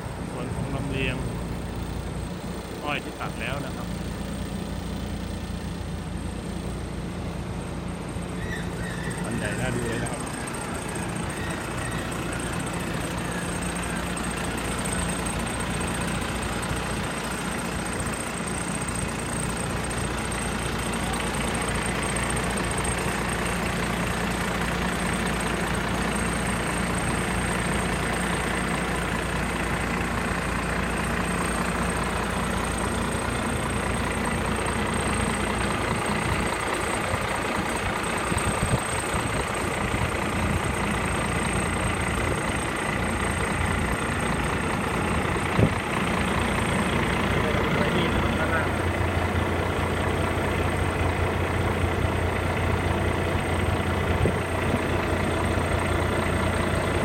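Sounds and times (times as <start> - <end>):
diesel engine idling: 0.0 - 57.0.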